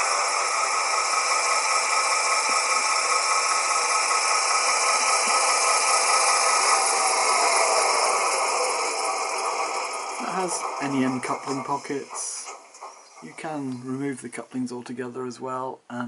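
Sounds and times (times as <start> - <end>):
model locomotive diesel engine sound: 0.0 - 15.8.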